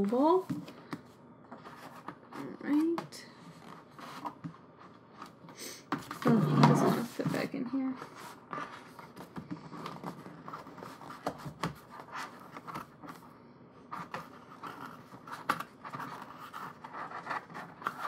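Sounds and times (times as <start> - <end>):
paper and packaging rustling: 13.9 - 18.0.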